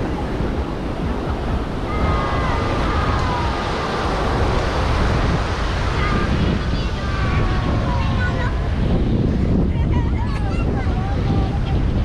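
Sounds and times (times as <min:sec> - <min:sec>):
surf roaring: 0:00.0 - 0:12.0
wind buffeting microphone: 0:00.0 - 0:12.0.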